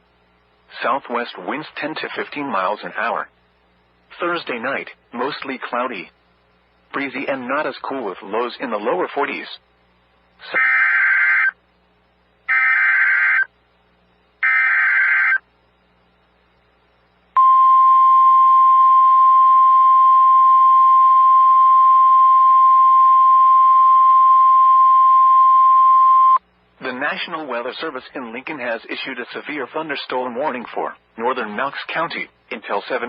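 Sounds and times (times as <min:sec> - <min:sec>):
buzzing data burst screech: 0:12.5 - 0:13.5, 0:14.4 - 0:15.4
steady warning alarm tone: 0:12.5 - 0:13.5, 0:17.4 - 0:26.4.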